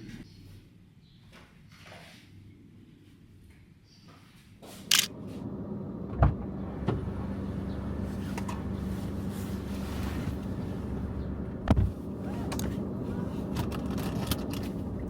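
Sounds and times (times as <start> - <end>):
sharp clicks: 4.9 - 5.1
low rumble with humming tone: 4.9 - 15.0
thump: 11.6 - 12.0.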